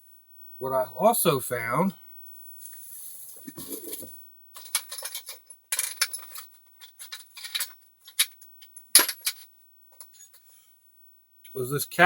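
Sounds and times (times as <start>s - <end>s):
small hard parts clattering: 3.4s - 10.5s.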